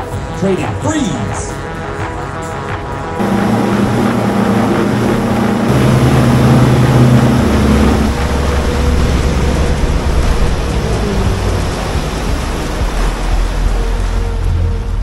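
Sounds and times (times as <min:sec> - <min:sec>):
wind: 0:00.0 - 0:15.0
outboard motor running: 0:03.0 - 0:15.0
water rushing: 0:03.1 - 0:15.0.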